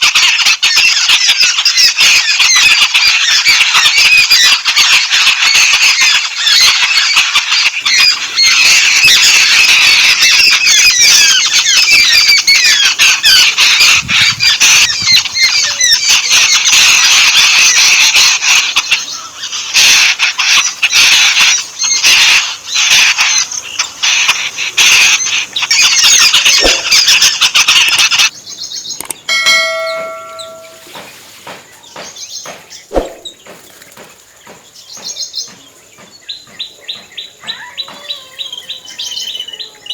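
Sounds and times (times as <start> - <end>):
babblers chattering: 0.0 - 28.3, 36.8 - 39.9.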